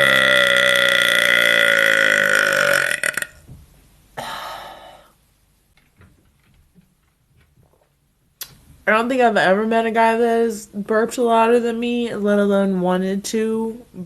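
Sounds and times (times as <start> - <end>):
woman belching: 0.0 - 3.4.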